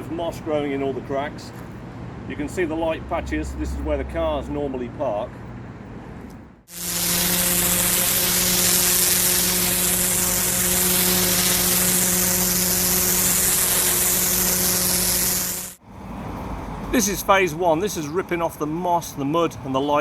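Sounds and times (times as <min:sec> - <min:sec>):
pressure washer machine hum: 0:06.7 - 0:15.8
pressure washer water jet hissing: 0:06.7 - 0:15.8.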